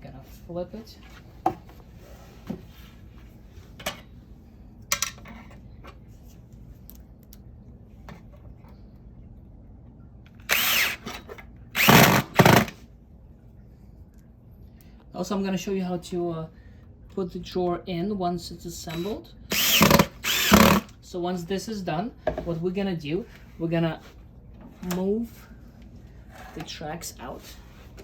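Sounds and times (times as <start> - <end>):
cordless drill driving screws: 10.4 - 12.8, 19.5 - 20.9.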